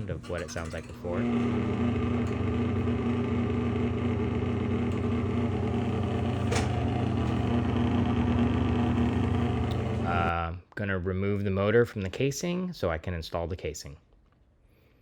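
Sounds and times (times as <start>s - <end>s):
exhaust fan humming: 1.0s - 10.3s
fan click: 6.4s - 7.4s.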